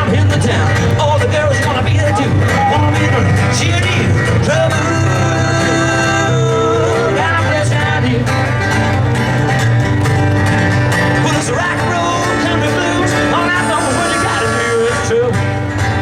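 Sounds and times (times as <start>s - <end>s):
bass notes: 0.0s - 16.0s
plucked guitar: 0.0s - 16.0s.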